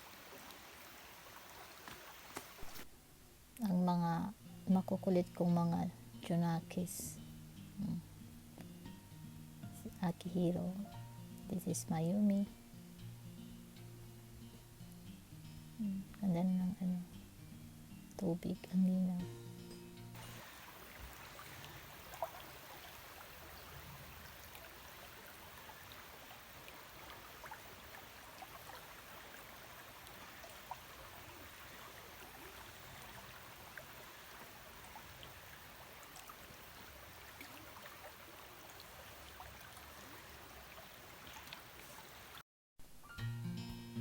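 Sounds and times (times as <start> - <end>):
river water flowing: 0.0 - 2.9, 20.2 - 42.4.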